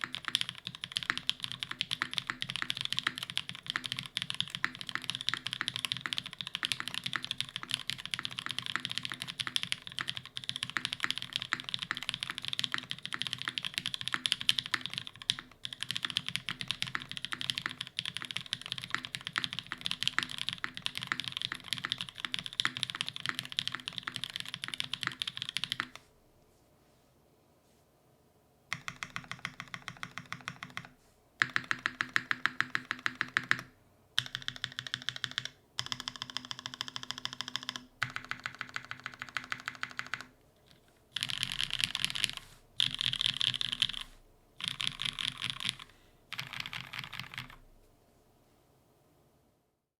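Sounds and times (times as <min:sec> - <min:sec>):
mechanical keyboard typing: 0:00.0 - 0:26.0, 0:28.7 - 0:47.6.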